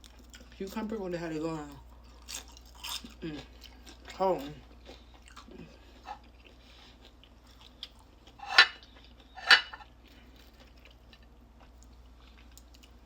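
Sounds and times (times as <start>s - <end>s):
crunch of biting fried chicken: 2.1s - 4.1s.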